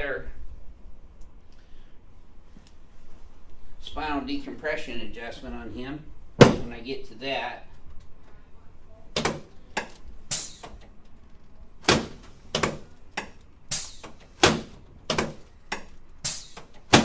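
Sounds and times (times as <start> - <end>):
sharp thuds and cracks: 6.4 - 6.8, 11.8 - 17.0.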